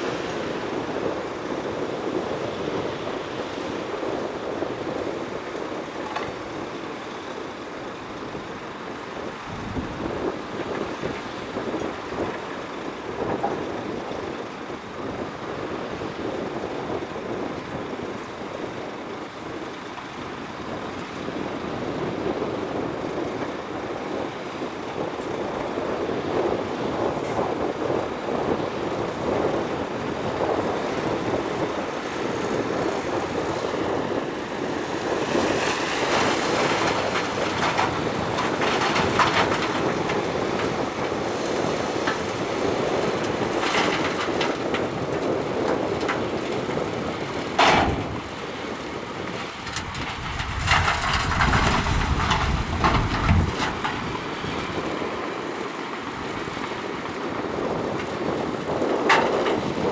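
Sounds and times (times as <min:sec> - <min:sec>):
bulldozer engine running under load: 0:00.0 - 0:59.9
tracks rattling and clanking: 0:22.4 - 0:59.9
scraping dirt: 0:35.3 - 0:42.2, 0:49.3 - 0:55.0.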